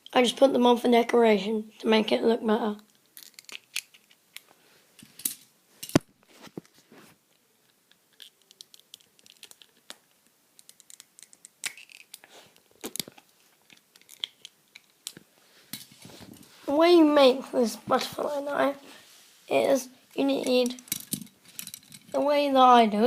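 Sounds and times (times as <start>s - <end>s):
plastic toy bricks clicking: 3.2s - 4.4s, 10.6s - 12.2s.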